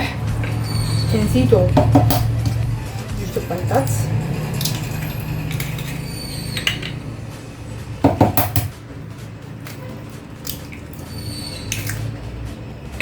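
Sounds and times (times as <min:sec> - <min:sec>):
bowl ringing: 0:00.2 - 0:07.9
eggs cracked against bowl: 0:01.7 - 0:02.6, 0:04.6 - 0:07.0, 0:09.6 - 0:12.2.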